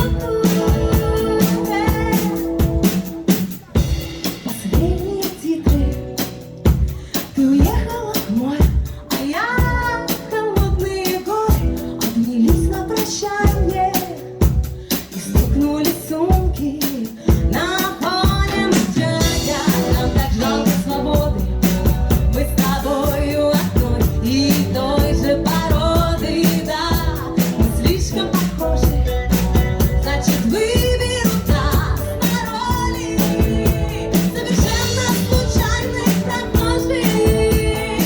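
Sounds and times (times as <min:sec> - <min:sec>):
pop song with singing: 0:00.0 - 0:38.0
steady drum beat: 0:00.0 - 0:38.0.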